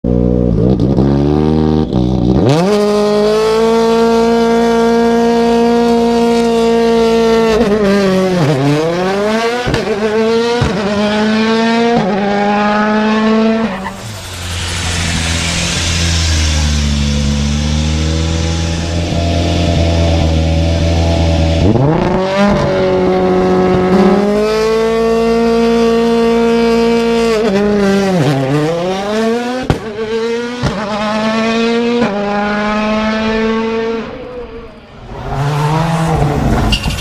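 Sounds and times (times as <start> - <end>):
racing car engine revving: 0.5 - 36.8
hiss: 13.8 - 17.5.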